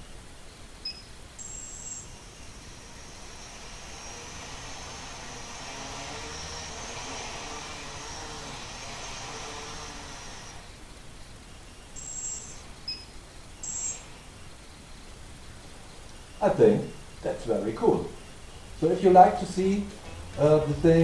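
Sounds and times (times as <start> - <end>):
drone motors whining: 1.4 - 10.9, 12.0 - 12.8, 13.6 - 14.4.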